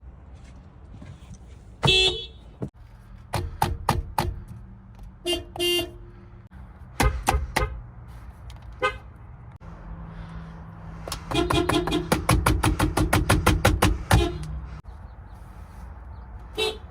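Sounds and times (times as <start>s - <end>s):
car horn beeping: 1.8s - 2.7s, 5.2s - 6.2s, 8.8s - 9.1s, 11.3s - 12.2s, 14.1s - 14.6s, 16.6s - 16.9s.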